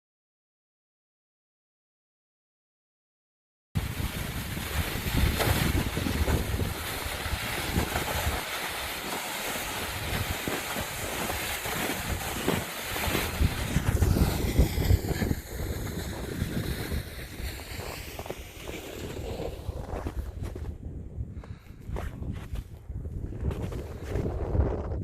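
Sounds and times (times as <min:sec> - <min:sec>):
wind buffeting microphone: 0:03.8 - 0:08.4, 0:09.7 - 0:25.0.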